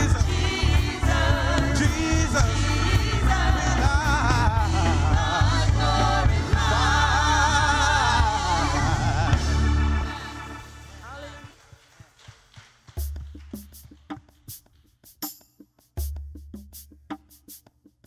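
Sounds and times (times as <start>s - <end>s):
choir singing worship song: 0.0s - 11.0s
band with heavy bass: 0.0s - 11.2s.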